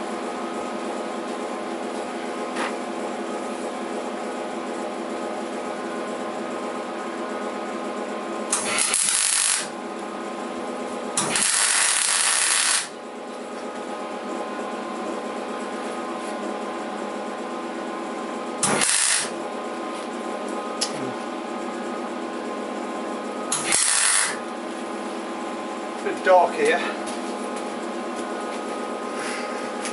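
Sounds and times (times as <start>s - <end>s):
steady machine hum: 0.0s - 29.9s
crackling welding arc hiss: 8.6s - 9.7s, 11.2s - 12.9s, 18.6s - 19.3s, 23.6s - 24.4s.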